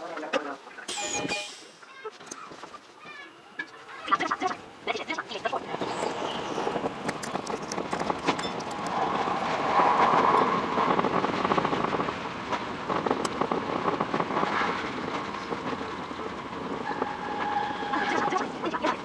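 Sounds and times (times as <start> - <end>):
train wheels clicking over rails: 5.7 - 18.6.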